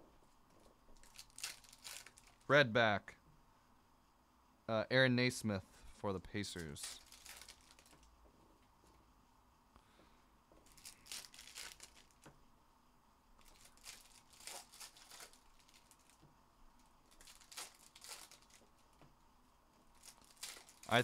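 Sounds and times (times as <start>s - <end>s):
plastic wrappers crinkling and tearing: 1.0s - 2.5s, 6.5s - 8.1s, 10.6s - 12.3s, 13.4s - 16.2s, 17.0s - 18.9s, 19.9s - 21.0s.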